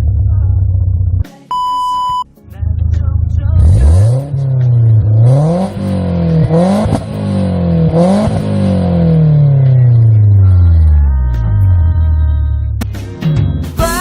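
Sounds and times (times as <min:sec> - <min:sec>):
car engine revving: 0:03.6 - 0:11.1.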